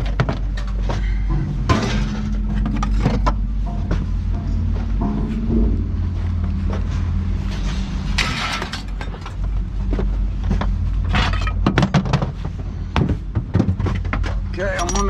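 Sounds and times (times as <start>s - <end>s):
low engine hum: 0.0s - 14.8s
scrap metal clanking: 0.5s - 9.4s
metal scraping: 0.5s - 9.6s.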